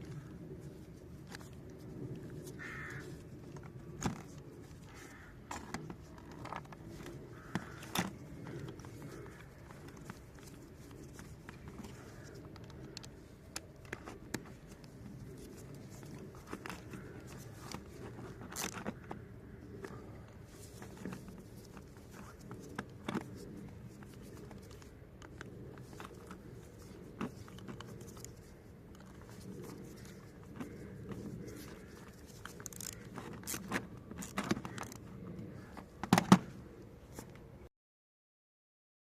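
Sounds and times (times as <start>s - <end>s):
low hum: 0.0s - 37.7s.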